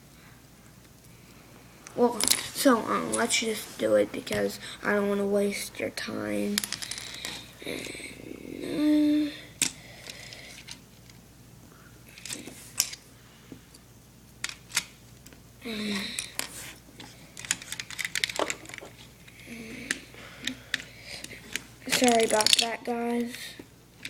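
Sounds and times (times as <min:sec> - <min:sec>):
plastic lego pieces clicking: 0:17.4 - 0:18.9, 0:19.9 - 0:23.3.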